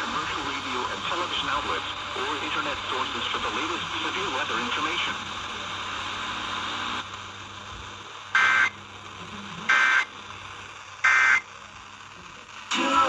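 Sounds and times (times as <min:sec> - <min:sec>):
faint radio hiss: 0:00.0 - 0:13.0
two-tone data bursts: 0:08.4 - 0:08.8, 0:09.7 - 0:10.1, 0:11.0 - 0:11.5.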